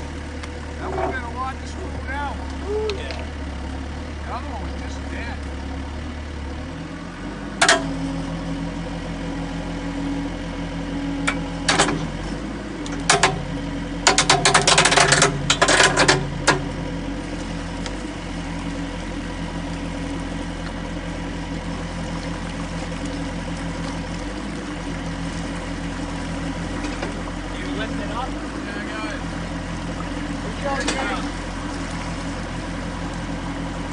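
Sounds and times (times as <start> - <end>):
engine running at low pitch: 0.0 - 33.9
rattling clatter of knocks: 13.0 - 13.4, 14.0 - 16.7.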